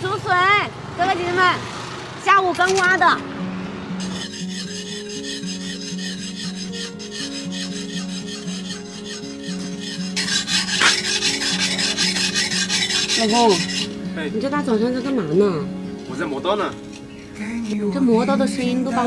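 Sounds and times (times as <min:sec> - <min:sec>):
knife scraping on sharpening stone: 0:04.0 - 0:14.0.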